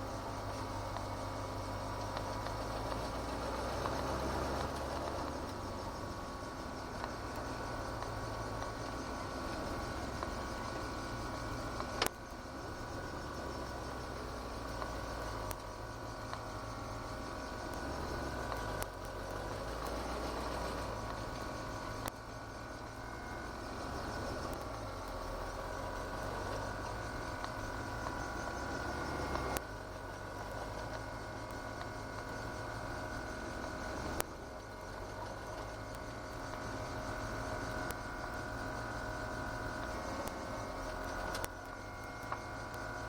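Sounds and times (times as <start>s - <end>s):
car engine running: 0.0s - 43.0s.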